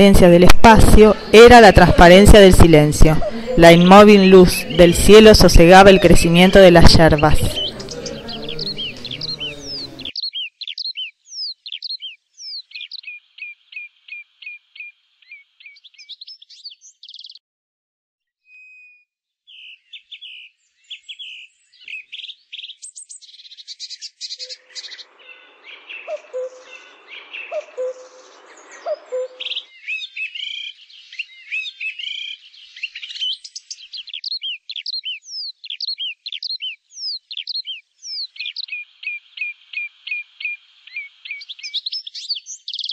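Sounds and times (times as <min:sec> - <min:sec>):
songbirds chirping and trilling: 0:00.0 - 0:17.4, 0:18.4 - 0:42.9
lower soft bird call: 0:18.5 - 0:42.9.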